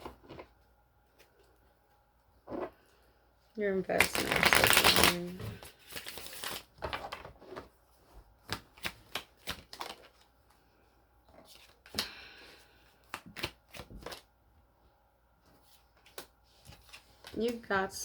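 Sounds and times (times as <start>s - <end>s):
cards snapping and tapping: 13.0s - 14.2s.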